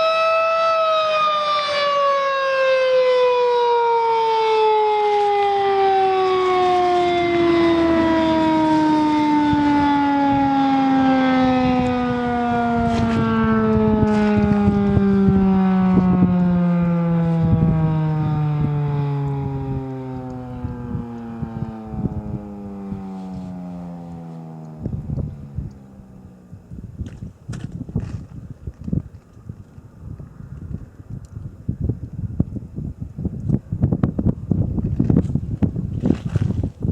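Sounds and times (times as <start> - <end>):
warning siren winding down: 0.0 - 26.8.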